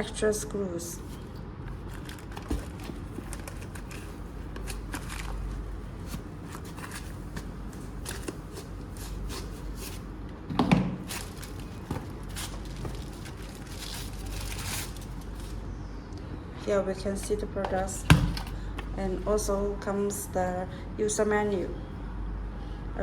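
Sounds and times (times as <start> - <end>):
packaging rustling: 1.1 - 10.2, 11.0 - 15.6.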